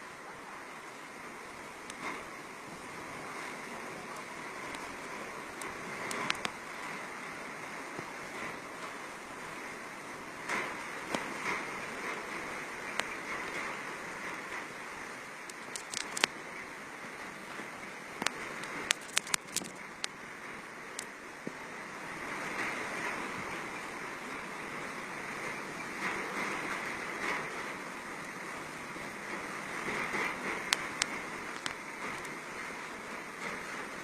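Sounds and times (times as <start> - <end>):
rushing wind and water: 0.0 - 34.0.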